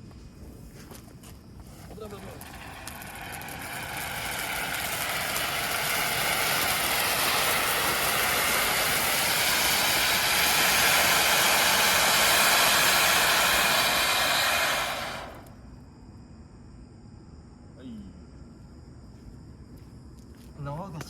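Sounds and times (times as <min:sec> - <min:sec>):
fireworks spraying sparks hissing: 0:00.4 - 0:15.7.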